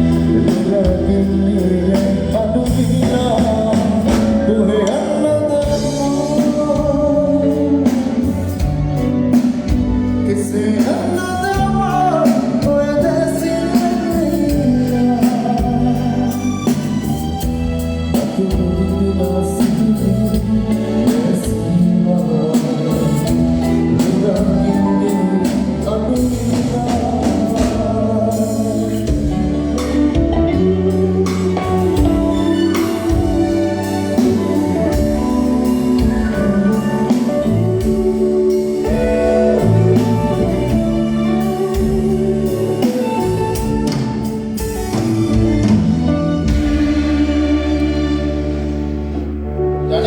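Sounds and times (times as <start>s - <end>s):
live band playing: 0.0s - 50.0s
person singing: 0.0s - 50.0s.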